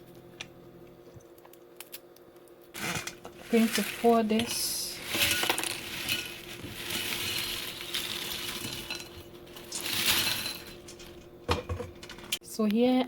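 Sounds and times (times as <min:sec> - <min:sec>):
chips poured into a dish: 0:02.8 - 0:11.1.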